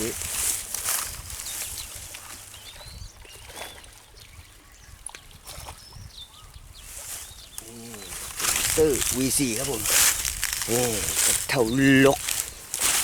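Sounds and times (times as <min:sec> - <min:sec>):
water trickling and splashing: 0:00.0 - 0:13.0.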